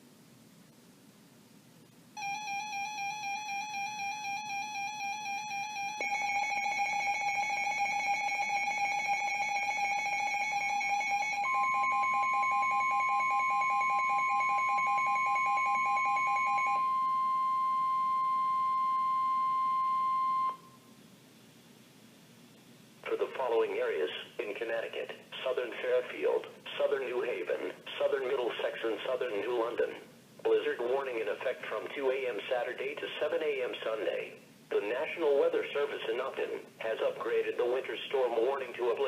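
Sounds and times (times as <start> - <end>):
steady warning alarm tone: 2.2 - 20.9
wavering electronic tone: 2.2 - 20.9.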